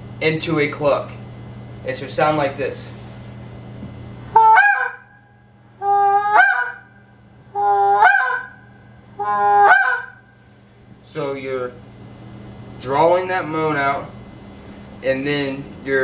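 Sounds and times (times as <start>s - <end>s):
goose call honks: 4.4s - 5.1s, 5.8s - 6.9s, 7.6s - 8.6s, 9.2s - 10.3s.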